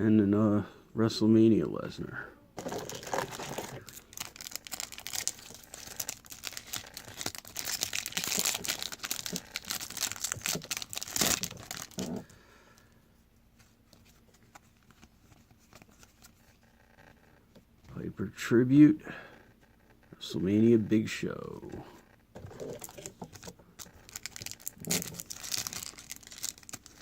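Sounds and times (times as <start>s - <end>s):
wrapper crinkling and tearing: 2.6s - 12.3s, 22.4s - 27.0s.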